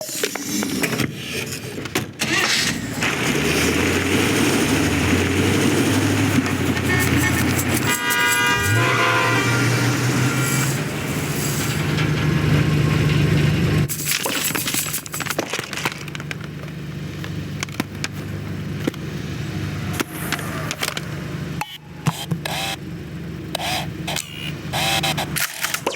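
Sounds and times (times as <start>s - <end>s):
traffic: 0.0s - 25.9s
car engine running: 1.0s - 25.9s.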